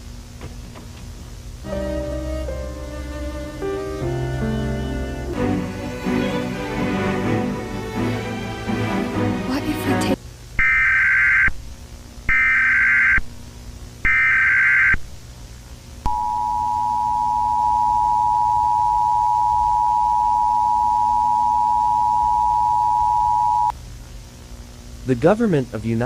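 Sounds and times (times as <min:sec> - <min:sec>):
screeching digital data bursts: 0:10.6 - 0:11.5, 0:12.3 - 0:13.2, 0:14.1 - 0:15.0
two-tone attention signal: 0:16.1 - 0:23.7.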